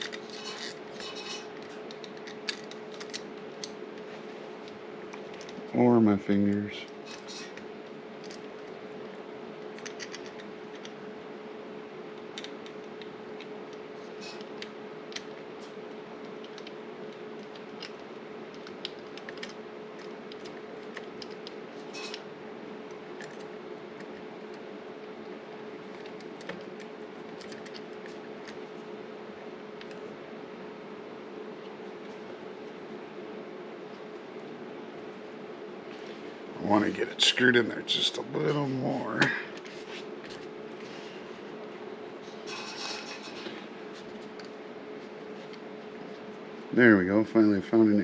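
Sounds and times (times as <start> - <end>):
metal hardware clicks and scrapes: 0.0 - 3.2, 42.4 - 43.6
steady background hum: 0.0 - 48.0.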